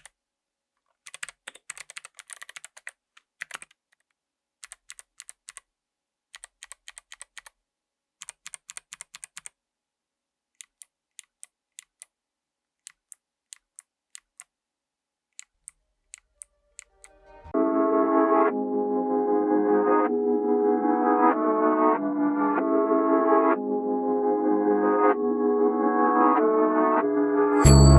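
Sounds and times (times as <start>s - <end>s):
mechanical keyboard clicks: 1.0s - 5.7s, 6.3s - 7.6s, 8.2s - 9.6s.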